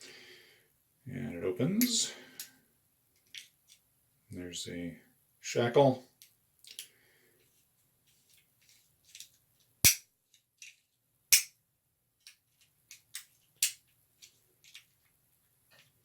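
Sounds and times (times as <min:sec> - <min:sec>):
metal padlock clicking and clacking: 0:12.3 - 0:13.8.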